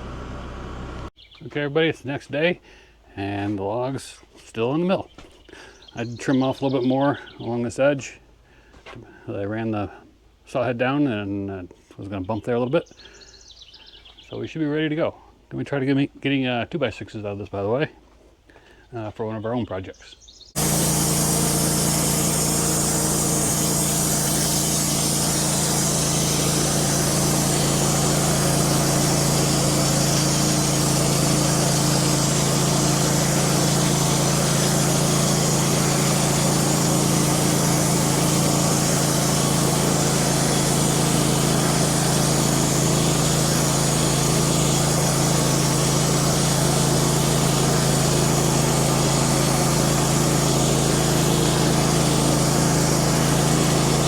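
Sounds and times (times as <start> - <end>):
sawmill engine running: 0.0 - 1.1, 20.6 - 54.0
band blade sawing log: 20.6 - 54.0.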